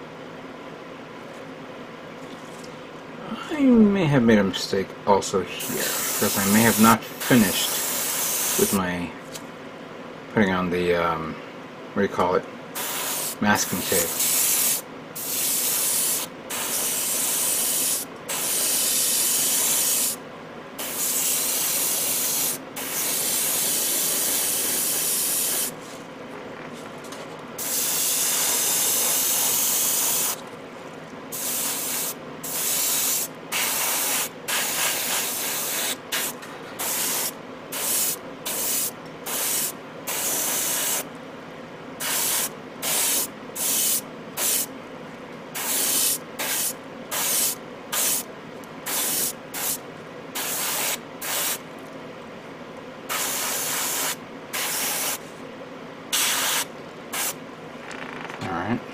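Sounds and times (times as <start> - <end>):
airbrush spraying hiss: 5.6 - 8.8, 12.8 - 20.2, 20.8 - 25.8, 27.6 - 30.4, 31.4 - 41.1, 42.0 - 44.7, 45.6 - 48.2, 48.9 - 49.8, 50.4 - 51.6, 53.1 - 55.2, 56.1 - 57.4.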